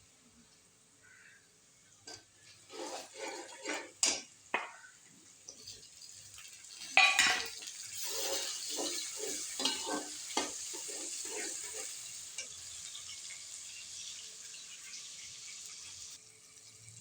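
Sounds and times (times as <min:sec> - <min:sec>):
spoon scraping a pot: 0:02.1 - 0:04.3, 0:06.9 - 0:12.5
food sizzling in hot oil: 0:02.1 - 0:17.0.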